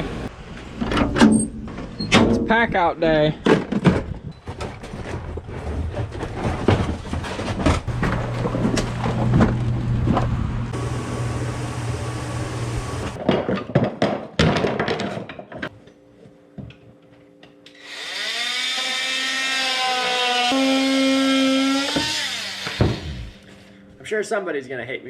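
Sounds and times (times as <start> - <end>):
low hum with hiss: 7.9 - 13.2
power tool whining: 17.7 - 23.7.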